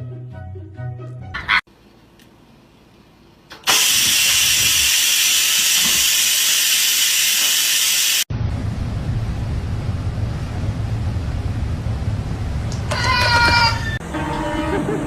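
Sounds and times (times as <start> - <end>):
loud steady hiss: 3.6 - 8.3.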